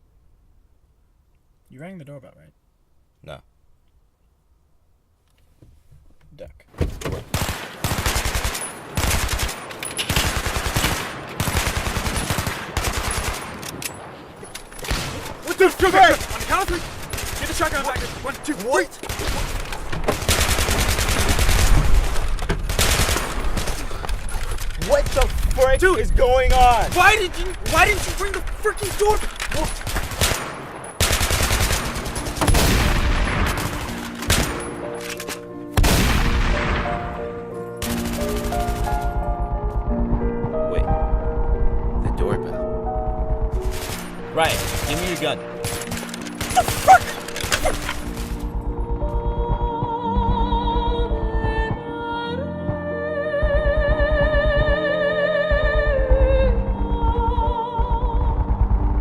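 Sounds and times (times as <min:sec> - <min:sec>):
automatic gunfire bursts: 0:07.3 - 0:13.6, 0:19.1 - 0:24.0
rapid gunfire: 0:07.3 - 0:13.7, 0:14.8 - 0:25.6, 0:26.8 - 0:34.6, 0:43.6 - 0:48.3.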